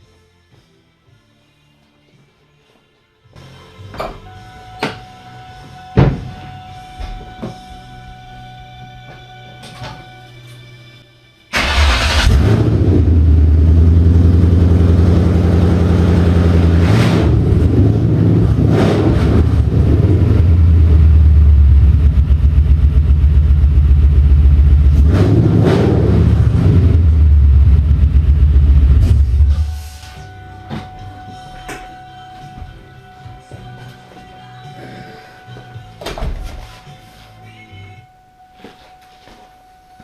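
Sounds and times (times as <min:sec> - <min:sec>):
car engine starting and revving: 0:11.5 - 0:30.2.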